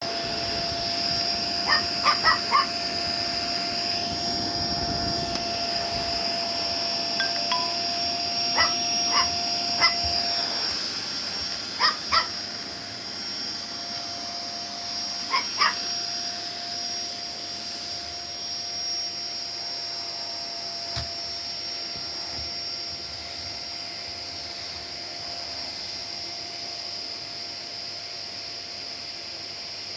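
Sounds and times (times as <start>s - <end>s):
vacuum cleaner running: 0.0s - 29.9s
dog yipping: 1.6s - 2.9s, 8.4s - 10.2s, 11.8s - 12.4s, 15.2s - 16.0s.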